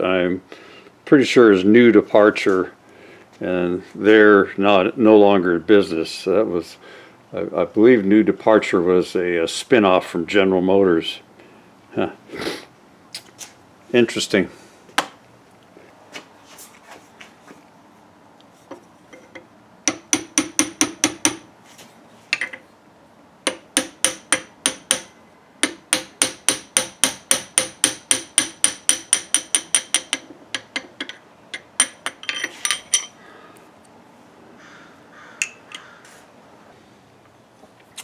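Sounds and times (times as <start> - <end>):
hammer tapping on steel: 19.9 - 21.4, 23.5 - 32.2.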